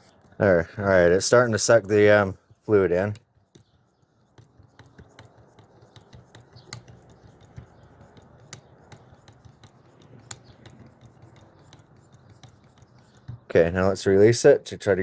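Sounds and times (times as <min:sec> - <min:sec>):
hand pump clicks and scrapes: 0:00.0 - 0:00.4, 0:01.2 - 0:13.6.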